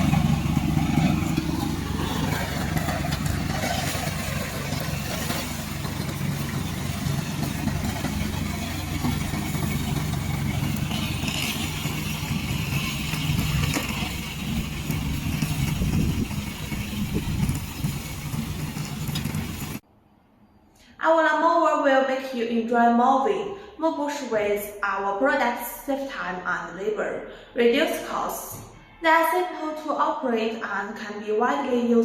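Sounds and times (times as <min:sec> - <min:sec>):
lawn mower engine running: 0:00.0 - 0:19.8.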